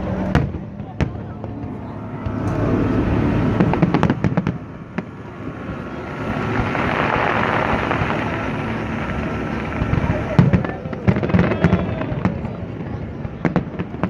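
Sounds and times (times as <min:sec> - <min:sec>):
fireworks rumbling bursts: 0:00.0 - 0:14.0
steady rushing noise: 0:00.0 - 0:14.0
sharp firework bangs: 0:00.2 - 0:01.6, 0:03.4 - 0:14.0.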